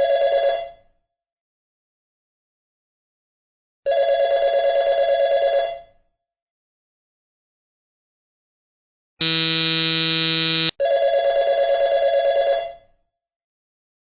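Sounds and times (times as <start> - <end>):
electric buzzer: 9.2 - 10.7
telephone bell ringing: 9.2 - 10.7.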